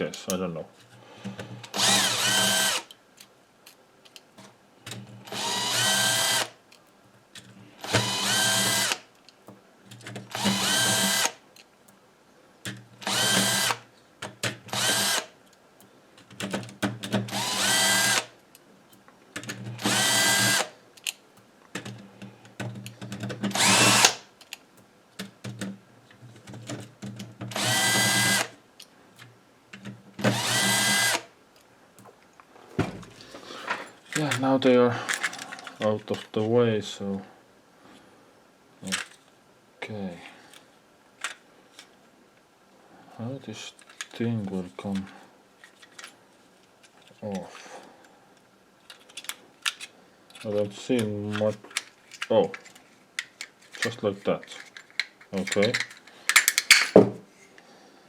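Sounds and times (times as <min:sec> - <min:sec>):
power drill motor whine: 0:01.7 - 0:02.9, 0:05.3 - 0:06.6, 0:07.8 - 0:09.0, 0:10.3 - 0:11.4, 0:13.0 - 0:13.8, 0:14.7 - 0:15.3, 0:17.3 - 0:18.3, 0:19.8 - 0:20.7, 0:23.5 - 0:24.2, 0:27.5 - 0:28.5, 0:30.3 - 0:31.3.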